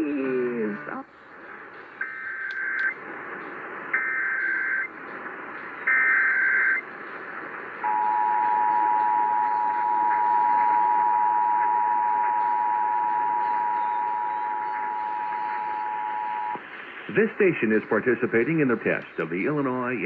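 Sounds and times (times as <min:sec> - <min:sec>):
radio background hiss: 0:00.0 - 0:20.0
buzzy digital data tones: 0:03.9 - 0:04.9
two-tone attention signal: 0:07.9 - 0:16.6.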